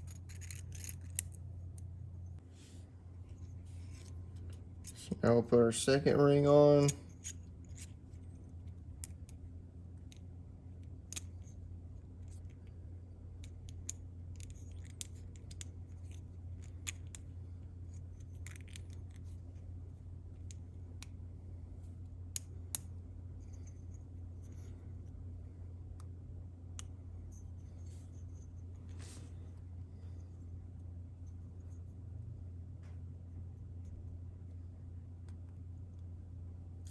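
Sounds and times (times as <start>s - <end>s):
metallic clicks and scrapes: 0.0s - 1.9s
low steady hum: 0.0s - 36.9s.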